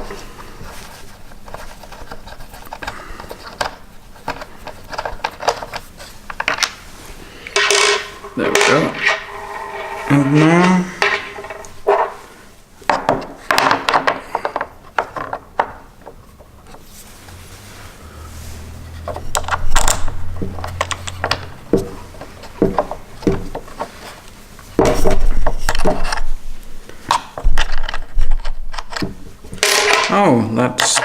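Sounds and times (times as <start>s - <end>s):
metal hardware clattering: 7.5s - 12.2s, 29.6s - 30.2s
low hum: 7.5s - 12.3s.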